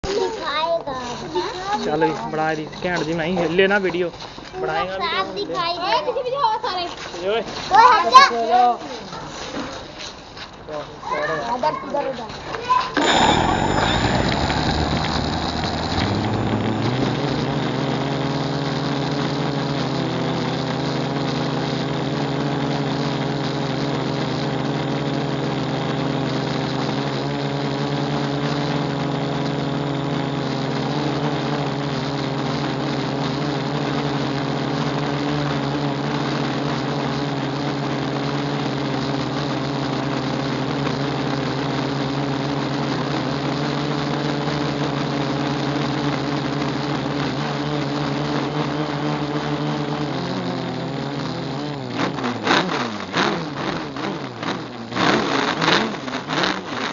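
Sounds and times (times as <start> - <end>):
drone motors humming: 13.0 - 54.0.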